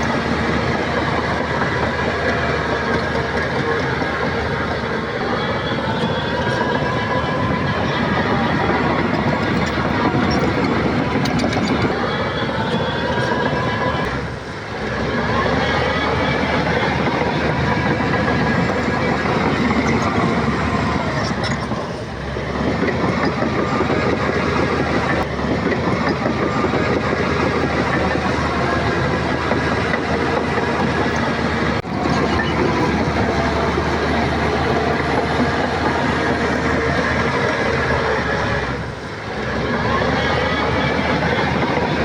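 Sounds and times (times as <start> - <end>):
bulldozer diesel engine: 0.0 - 42.0
steel tracks clattering: 0.0 - 42.0.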